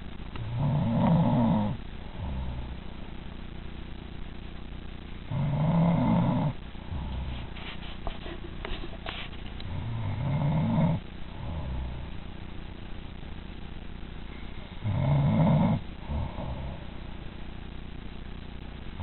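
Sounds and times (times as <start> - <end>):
woman snoring: 0.4 - 2.8, 5.3 - 7.5, 9.6 - 12.1, 14.8 - 16.9.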